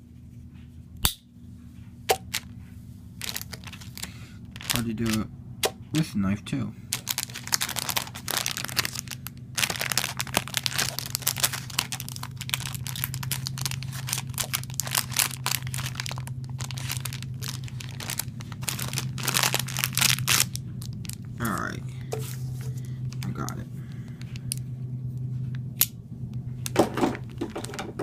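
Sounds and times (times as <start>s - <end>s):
plastic packaging crinkling: 2.2s - 2.6s, 3.2s - 5.2s, 6.9s - 21.4s, 22.3s - 24.6s, 26.6s - 28.0s
plastic cracking: 3.2s - 5.2s, 6.9s - 21.3s, 26.6s - 28.0s.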